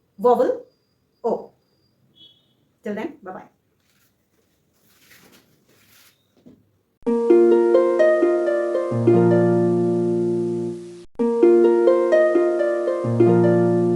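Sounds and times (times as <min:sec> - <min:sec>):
plucked notes over bass line: 0:07.1 - 0:13.9.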